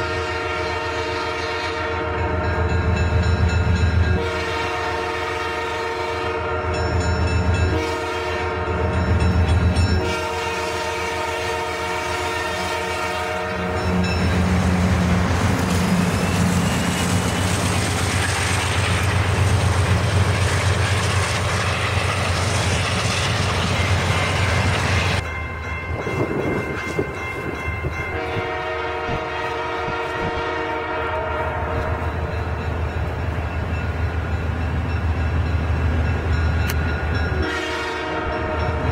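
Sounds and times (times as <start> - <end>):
train horn chord: 0.0 - 2.7, 4.0 - 9.1, 9.8 - 15.0, 28.0 - 32.2, 37.3 - 38.9
train engine drone: 0.0 - 38.9
wheels rushing on rails: 6.7 - 38.9.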